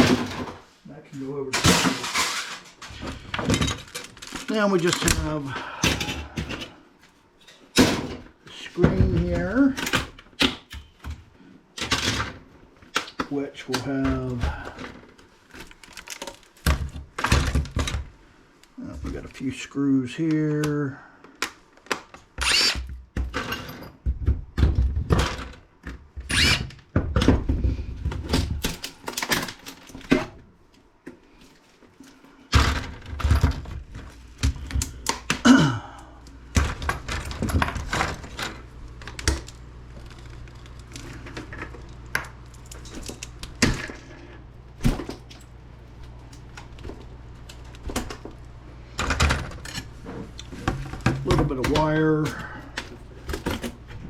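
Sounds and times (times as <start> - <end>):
clicks and knocks of parts: 1.5 - 19.2, 20.2 - 35.5, 36.2 - 54.0.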